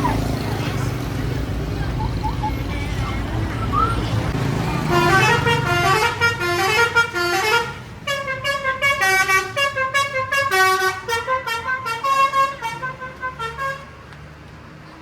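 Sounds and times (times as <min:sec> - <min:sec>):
bus horn playing a tune: 0:04.8 - 0:14.0.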